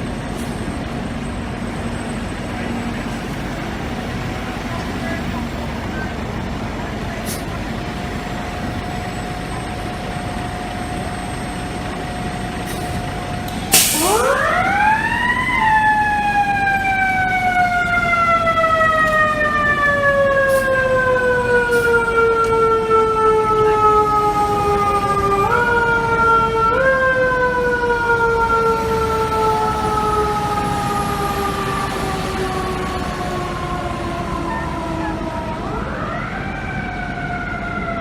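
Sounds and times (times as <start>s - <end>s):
engine and street noise: 0.0s - 38.0s
short loud blast: 13.7s - 14.3s.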